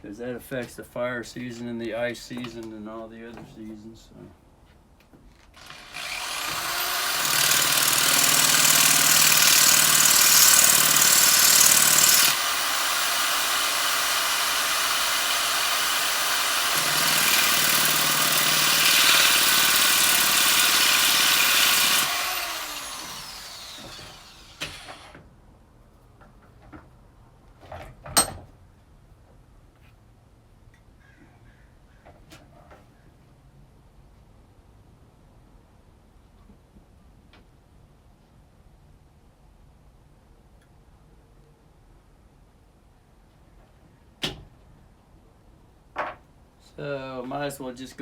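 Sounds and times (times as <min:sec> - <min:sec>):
chainsaw running: 0:05.6 - 0:25.1.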